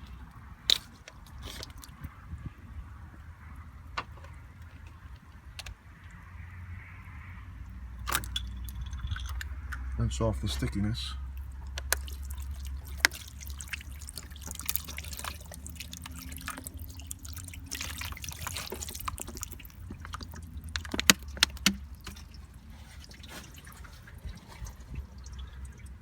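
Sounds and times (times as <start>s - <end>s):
water trickling and dripping: 7.6s - 26.0s.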